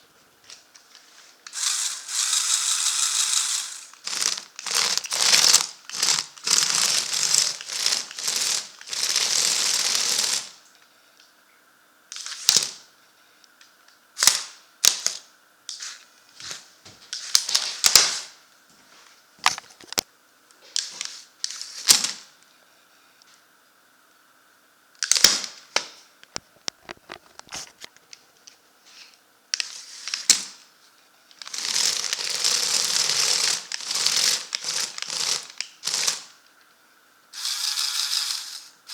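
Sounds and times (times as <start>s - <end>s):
electric motors whirring through gears: 1.5s - 10.5s, 31.4s - 36.2s, 37.4s - 38.9s.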